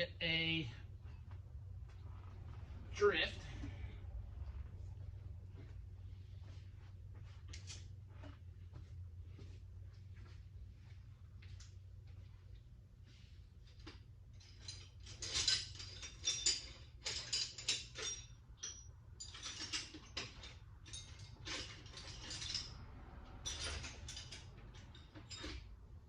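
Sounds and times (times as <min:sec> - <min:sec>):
metal tools clinking: 0:13.8 - 0:26.0.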